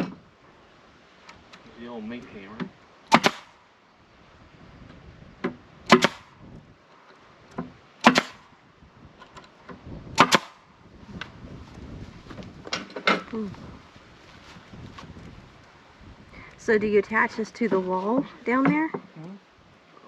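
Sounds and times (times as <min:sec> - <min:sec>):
nails hammered into wood: 0:03.1 - 0:03.5, 0:05.5 - 0:06.2, 0:08.0 - 0:08.4, 0:10.2 - 0:10.6.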